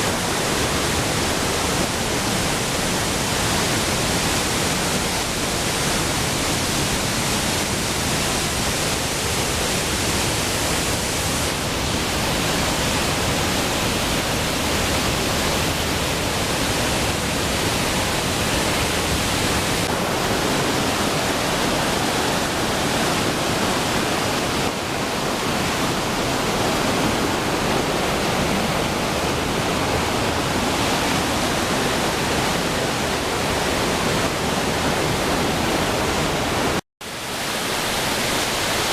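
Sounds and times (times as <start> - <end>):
rush of falling water: 0.0 - 38.9.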